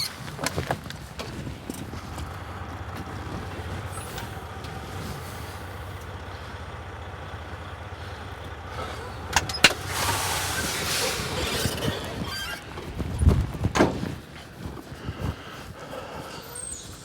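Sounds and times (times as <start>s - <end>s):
diesel truck engine idling: 0.0s - 13.0s
air hissing: 9.6s - 11.7s.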